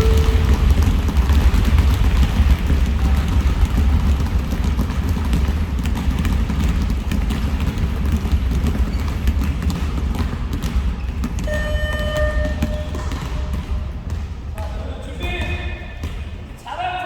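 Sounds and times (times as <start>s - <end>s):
basketballs dribbling on gym floor: 0.0s - 16.8s.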